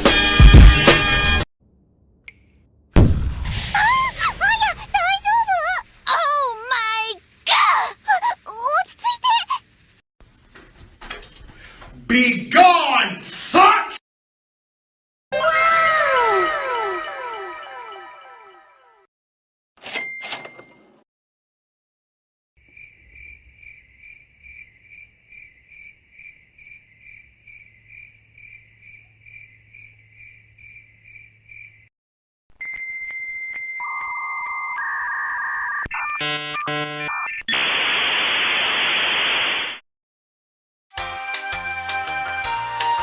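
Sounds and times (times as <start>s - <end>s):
music: 0.0s - 1.4s, 40.9s - 43.0s
crickets chirping: 22.6s - 31.9s.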